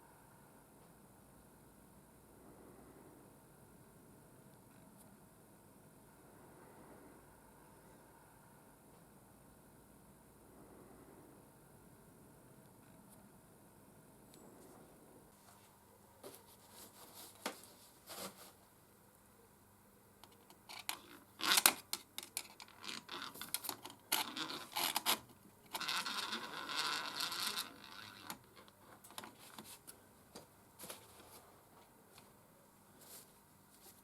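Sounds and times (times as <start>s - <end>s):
small parts clicking and knocking: 20.2s - 29.6s.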